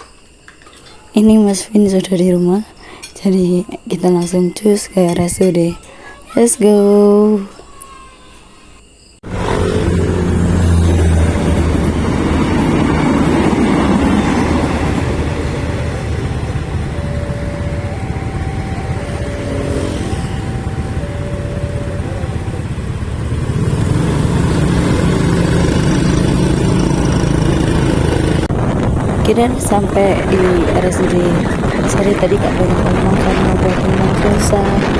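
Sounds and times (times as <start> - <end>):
road noise: 8.4 - 34.9
two-tone alternating siren: 8.7 - 34.9
vehicle engine hum: 9.2 - 34.9
wind noise: 9.2 - 34.9.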